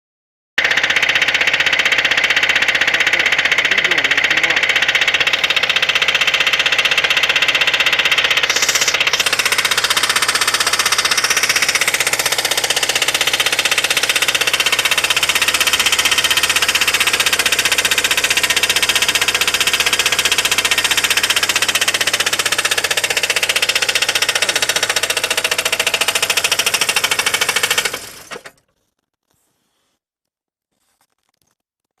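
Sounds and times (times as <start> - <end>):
car engine running: 0.6 - 28.6
rapid regular engine knock: 0.6 - 28.6.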